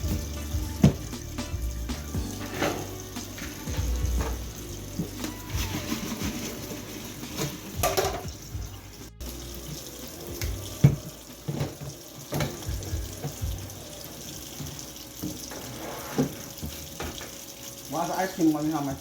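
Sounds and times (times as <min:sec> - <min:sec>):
tap running into sink: 0:00.0 - 0:01.2, 0:02.4 - 0:06.6, 0:07.3 - 0:08.6, 0:10.3 - 0:13.6, 0:14.5 - 0:17.5
dishes clinking and knocking: 0:02.4 - 0:08.4, 0:10.8 - 0:13.5.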